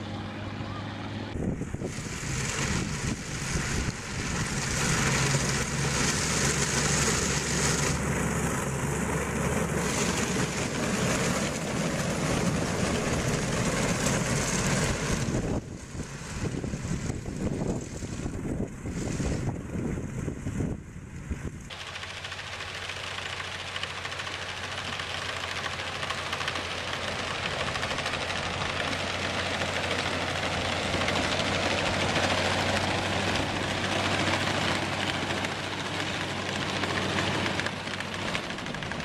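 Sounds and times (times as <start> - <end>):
loud rushing noise: 0.0 - 20.7
heavy vehicle engine humming: 0.0 - 39.0.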